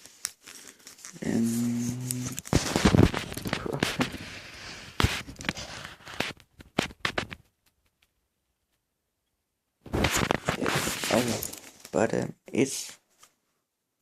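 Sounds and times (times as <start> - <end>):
packaging crackling and clicks: 1.8 - 8.1.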